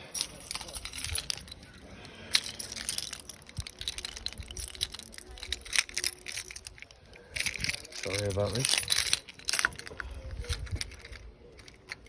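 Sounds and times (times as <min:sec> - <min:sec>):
light metallic clinks: 0:00.0 - 0:12.0.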